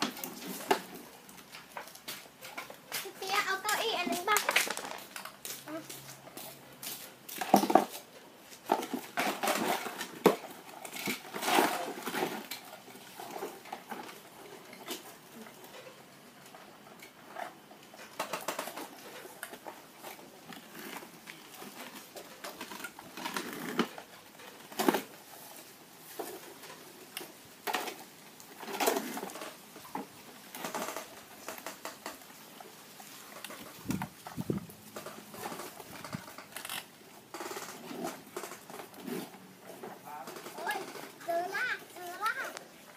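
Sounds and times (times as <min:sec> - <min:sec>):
plastic toy vehicles clattering: 0:00.0 - 0:05.7, 0:07.4 - 0:42.9.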